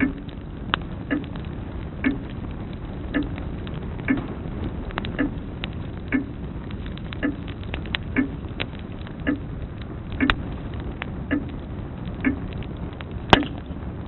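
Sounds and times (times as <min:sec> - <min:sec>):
grandfather clock ticking: 0:00.0 - 0:00.4, 0:01.1 - 0:01.4, 0:02.0 - 0:02.3, 0:03.1 - 0:03.4, 0:05.2 - 0:05.4, 0:06.1 - 0:06.4, 0:07.2 - 0:07.5, 0:08.2 - 0:08.4, 0:09.2 - 0:09.4, 0:11.3 - 0:11.5, 0:12.2 - 0:12.4
loud sharp crack: 0:00.0 - 0:13.8
fire crackling and popping: 0:00.0 - 0:14.0.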